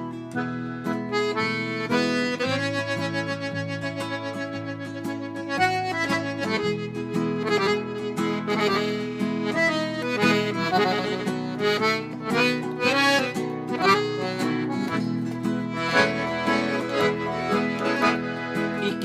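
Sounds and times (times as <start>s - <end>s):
accordion melody: 0.0s - 19.0s
guitar accompaniment: 0.0s - 19.0s.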